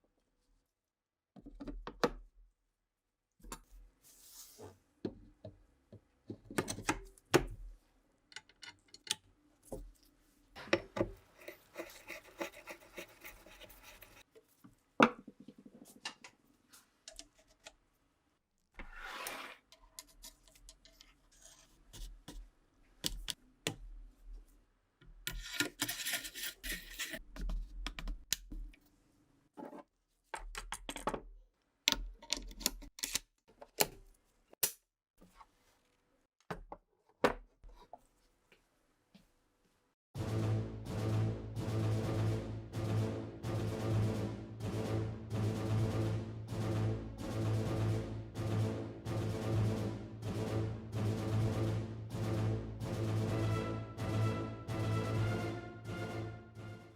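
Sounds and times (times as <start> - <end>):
scraping or rubbing: 11.2 - 14.3, 18.8 - 19.8, 25.9 - 27.2.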